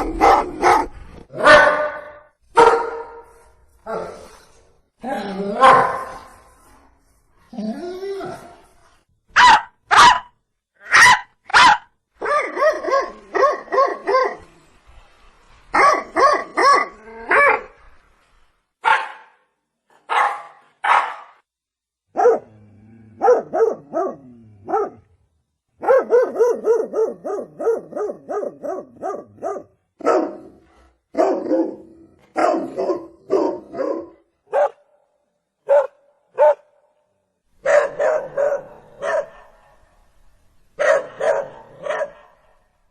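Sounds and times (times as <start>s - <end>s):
dog barking: 0.0s - 3.3s, 5.6s - 6.3s, 9.4s - 14.4s, 15.8s - 17.7s, 18.8s - 19.4s, 20.0s - 21.4s, 22.1s - 22.6s, 23.2s - 25.0s, 25.8s - 34.9s, 35.6s - 36.8s, 37.6s - 40.0s, 40.8s - 42.5s.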